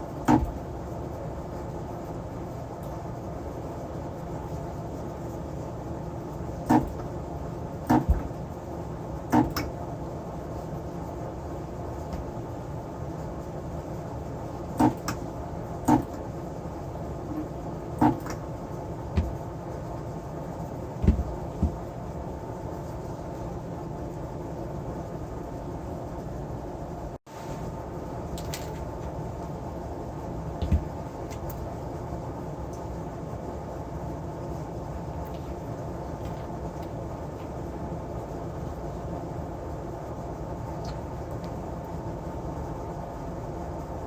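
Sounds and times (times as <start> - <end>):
steady low hum: 0.0 - 44.0
clicks and knocks of small tools: 28.4 - 28.9.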